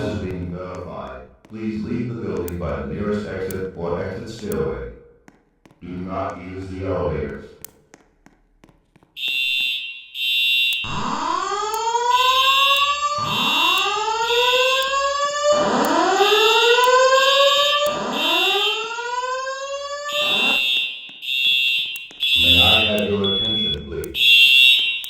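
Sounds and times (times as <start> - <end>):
fire alarm rising whoop tones: 9.2 - 25.0
high-pitched pulsing beep: 22.3 - 23.8.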